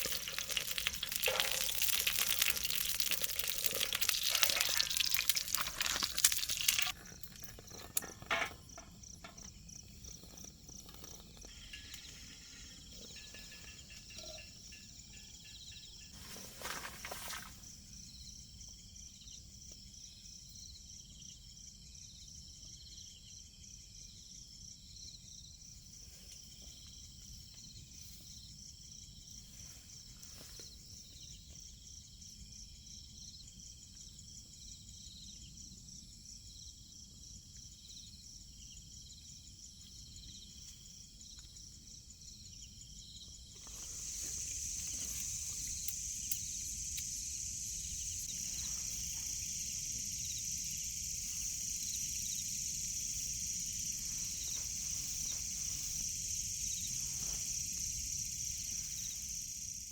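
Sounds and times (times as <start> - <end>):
food sizzling in a pan: 0.0 - 7.0
insect chirping: 0.0 - 59.9
short rustle: 16.2 - 17.6.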